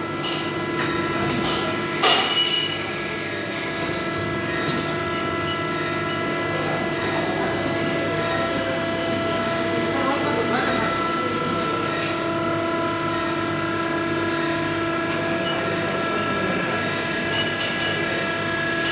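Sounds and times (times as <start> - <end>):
steady machine hum: 0.0 - 18.9
sharp knocks and clinks: 17.3 - 18.2.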